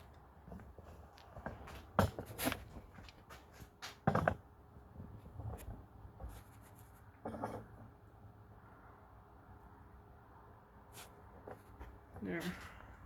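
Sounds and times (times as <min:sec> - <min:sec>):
hard objects knocking and clattering: 0:04.0 - 0:04.5.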